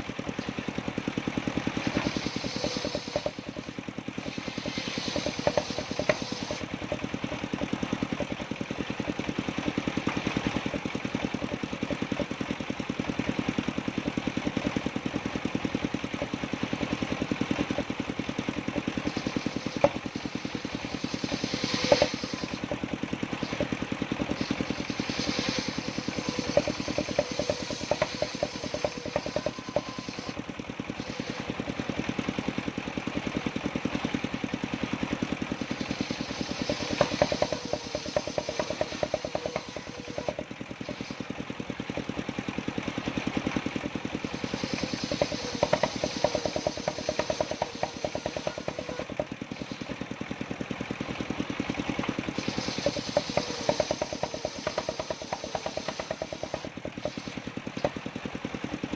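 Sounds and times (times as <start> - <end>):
sawmill engine running: 0.0 - 58.9
sharp knocks and clatters: 1.6 - 12.4, 18.5 - 30.4, 35.6 - 41.3, 43.6 - 50.0, 52.4 - 58.2.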